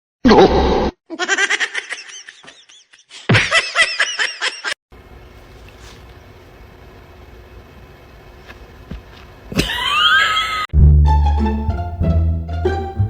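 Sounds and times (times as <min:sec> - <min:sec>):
person giggling: 0:01.1 - 0:04.8, 0:09.5 - 0:10.7.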